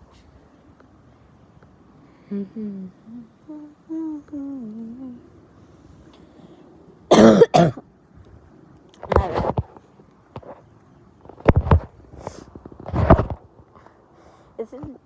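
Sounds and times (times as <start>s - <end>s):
soft humming: 2.1s - 5.4s
girl coughing: 7.1s - 7.8s.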